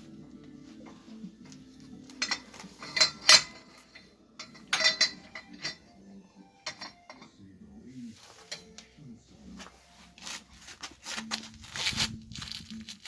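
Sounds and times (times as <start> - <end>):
metal objects clinking: 1.4 - 6.0, 6.6 - 7.4.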